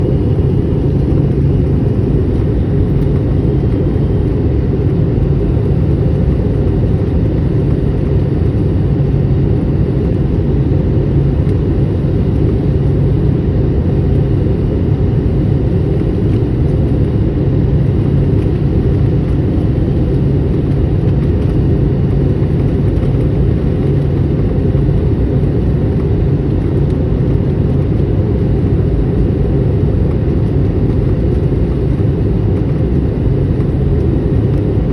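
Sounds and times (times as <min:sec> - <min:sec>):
constant low hum: 0:00.0 - 0:34.9
jet engine and airflow rumble: 0:00.0 - 0:34.9.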